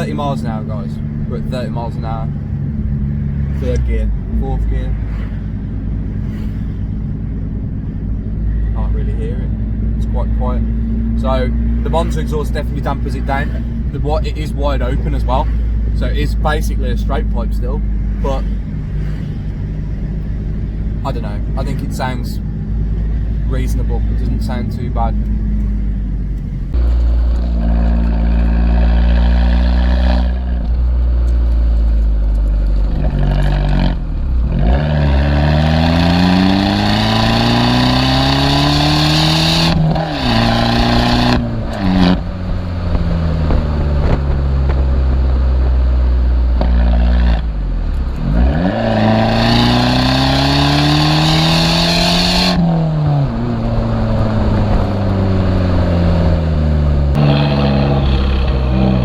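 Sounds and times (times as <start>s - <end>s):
car engine revving hard: 27.4s - 30.8s, 32.9s - 47.5s, 48.2s - 59.0s.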